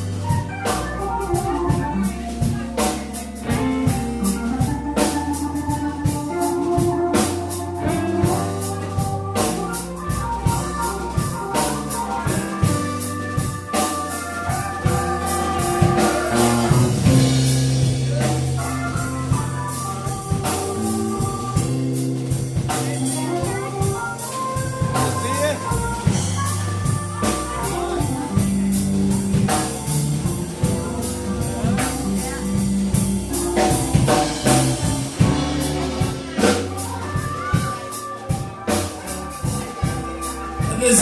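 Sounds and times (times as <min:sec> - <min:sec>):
drum kit: 0:00.0 - 0:41.0
electric bass: 0:00.0 - 0:41.0
electric guitar: 0:00.0 - 0:41.0
organ-toned keyboards: 0:00.0 - 0:41.0.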